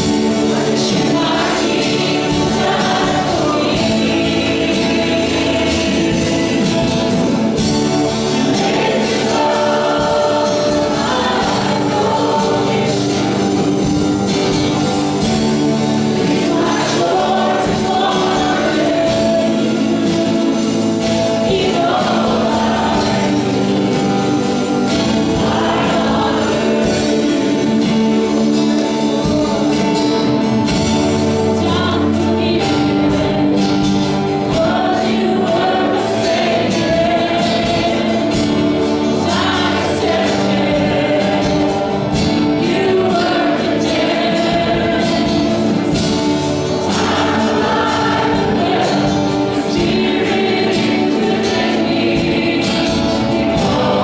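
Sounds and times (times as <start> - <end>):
band playing gospel song: 0.0 - 54.0
voices singing together: 0.0 - 54.0.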